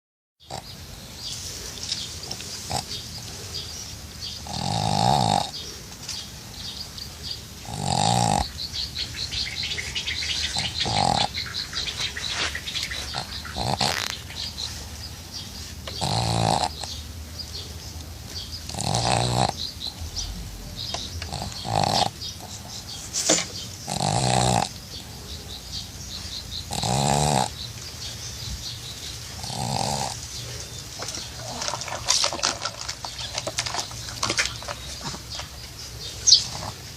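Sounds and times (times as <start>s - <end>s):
dog snoring: 2.2s - 3.0s, 4.3s - 5.6s, 7.6s - 8.6s, 10.4s - 12.0s, 12.9s - 14.6s, 15.8s - 17.0s, 18.6s - 22.9s, 23.8s - 25.1s, 26.7s - 27.6s, 29.4s - 30.2s.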